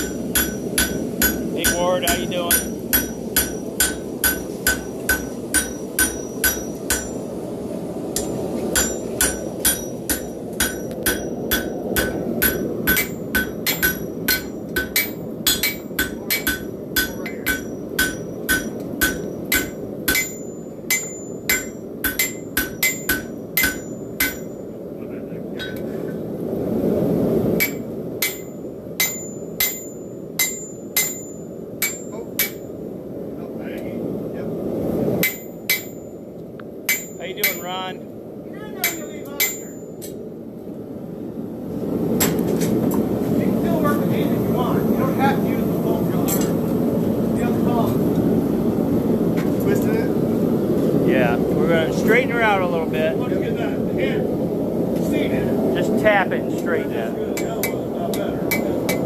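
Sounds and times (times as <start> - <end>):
hammer striking hot steel on anvil: 0.0 - 7.2, 8.1 - 24.7, 25.6 - 25.9, 27.6 - 32.7, 35.2 - 36.1, 36.9 - 37.8, 38.8 - 40.2, 42.2 - 42.5, 57.4 - 59.0
steady low rush: 0.0 - 59.0.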